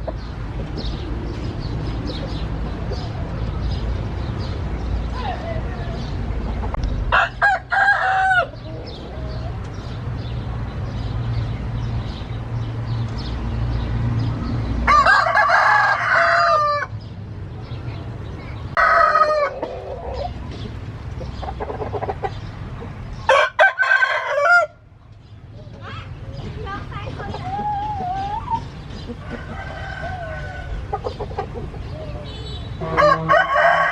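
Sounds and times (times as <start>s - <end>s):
roosters crowing: 6.0s - 9.6s, 14.7s - 17.0s, 18.7s - 20.6s, 23.2s - 24.9s, 27.2s - 33.9s.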